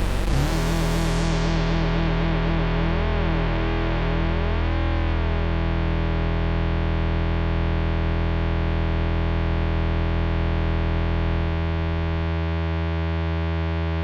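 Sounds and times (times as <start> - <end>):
synth bass note ringing: 0.0 - 6.0.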